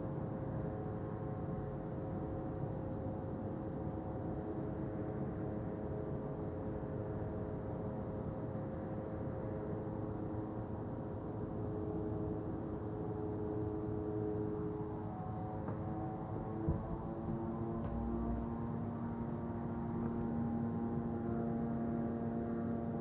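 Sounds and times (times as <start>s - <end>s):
humming drone: 9.0s - 23.0s.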